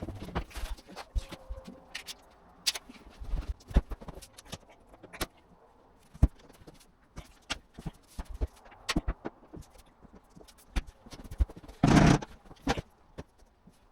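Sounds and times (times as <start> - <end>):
floorboards knocking and clicking: 6.2 - 13.4.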